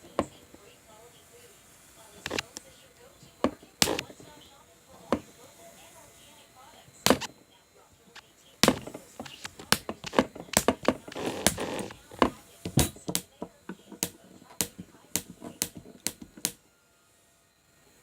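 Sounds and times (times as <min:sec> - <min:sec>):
plastic toys clicking and tapping: 0:03.4 - 0:04.1, 0:08.6 - 0:16.6.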